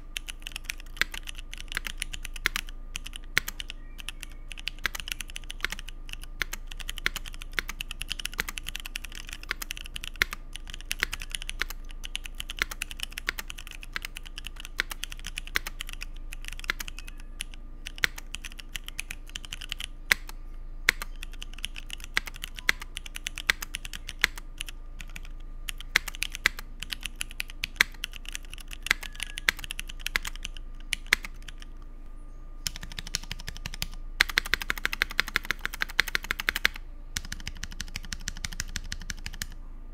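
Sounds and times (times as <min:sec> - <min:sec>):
mechanical keyboard typing: 0:00.0 - 0:31.7, 0:32.6 - 0:39.6.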